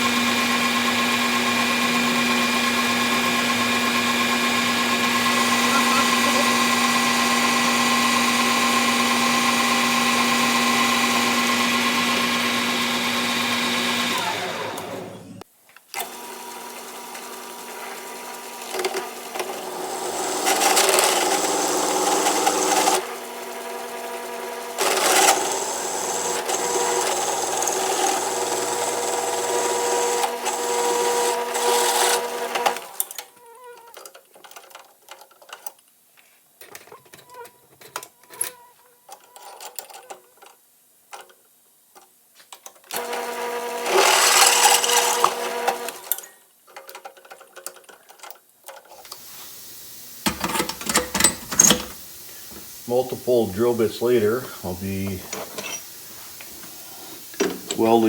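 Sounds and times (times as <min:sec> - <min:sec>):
metal lathe humming: 0:00.0 - 0:15.4, 0:16.0 - 0:32.9, 0:43.0 - 0:46.1
rough cutting noise: 0:00.1 - 0:15.4.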